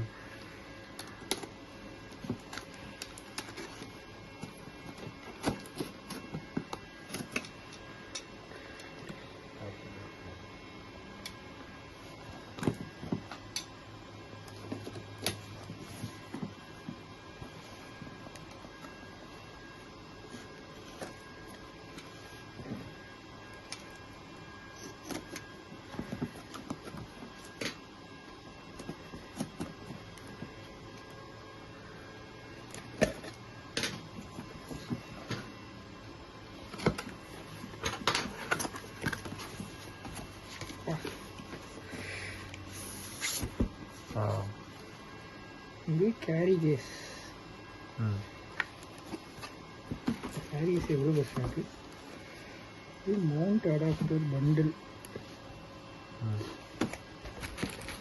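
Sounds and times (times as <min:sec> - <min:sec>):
steady low hum: 0:00.0 - 0:58.0
packaging clicks taps and rustles: 0:00.9 - 0:08.2, 0:56.8 - 0:58.0.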